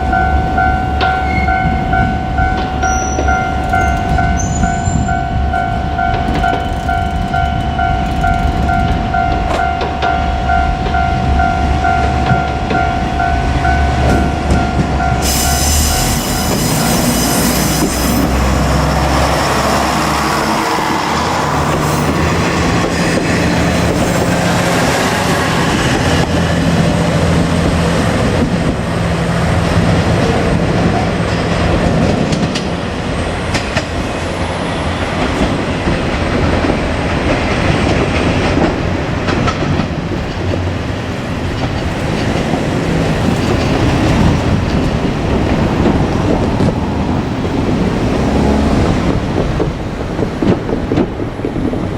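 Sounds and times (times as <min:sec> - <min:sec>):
level crossing bell: 0:00.0 - 0:15.7
train wheels clacking over rail joints: 0:14.0 - 0:29.0, 0:35.0 - 0:51.9
wheel squeal: 0:15.2 - 0:20.9.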